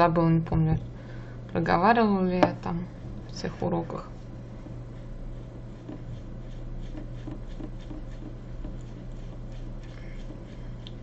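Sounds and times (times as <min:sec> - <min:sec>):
steady low hum: 0:00.0 - 0:11.0
paintbrush scraping and tapping: 0:04.6 - 0:11.0.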